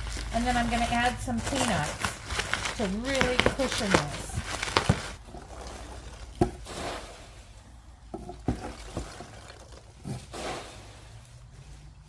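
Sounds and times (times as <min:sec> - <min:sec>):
packing peanuts rustling into box: 0:00.0 - 0:07.1.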